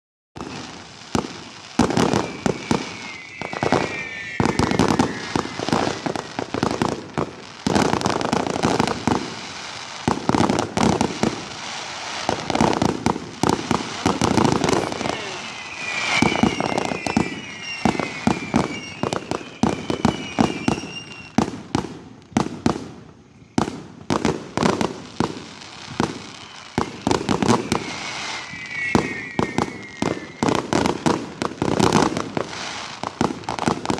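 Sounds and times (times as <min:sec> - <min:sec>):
shrill falling whistles: 0:00.4 - 0:07.2, 0:13.5 - 0:21.6, 0:25.6 - 0:33.8
fireworks bangs and booms: 0:00.4 - 0:33.9.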